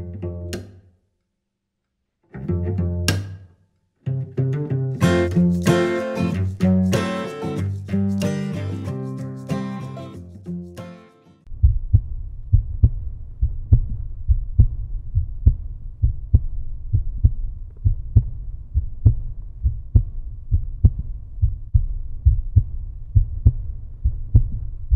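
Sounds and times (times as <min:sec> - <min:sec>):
low thudding pulse: 0:11.5 - 0:24.9.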